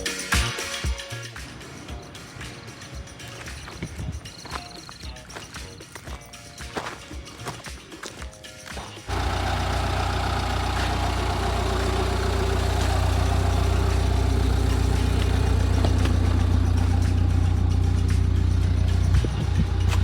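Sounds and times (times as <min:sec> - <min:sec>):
engine droning: 0:09.1 - 0:20.0.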